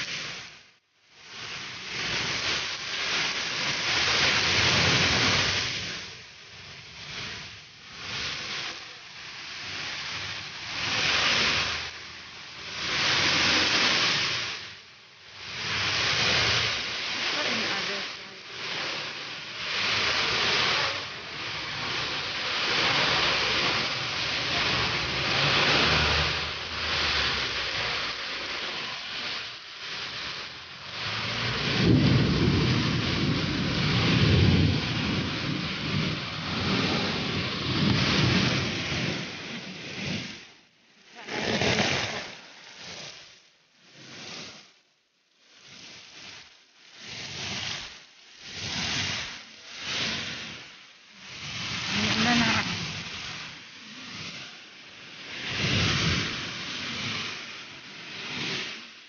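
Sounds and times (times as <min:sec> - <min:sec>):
heavy rain hissing: 0:00.0 - 0:59.0
thunder rumbling: 0:15.7 - 0:29.3, 0:30.1 - 0:40.2.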